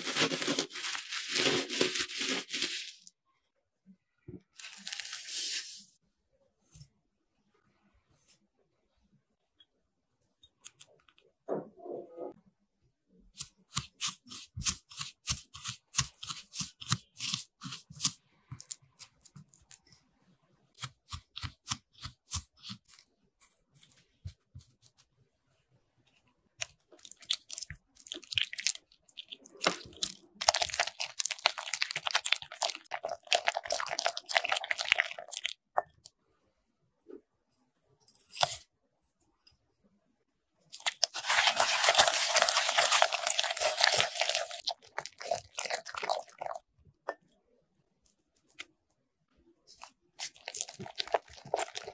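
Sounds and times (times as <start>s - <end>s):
dense crunching: 0.0s - 3.1s, 40.7s - 46.6s, 49.7s - 51.9s.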